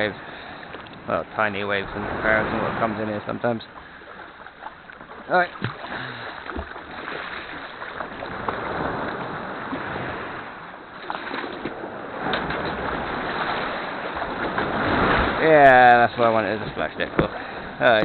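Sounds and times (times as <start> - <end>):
waves splashing against kayak: 0.0 - 18.0
wind on microphone: 11.6 - 15.9.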